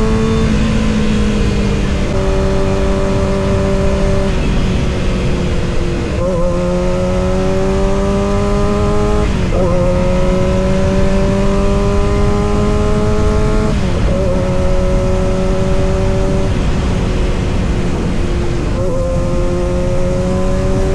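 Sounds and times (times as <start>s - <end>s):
motorcycle engine accelerating: 0.0s - 20.9s.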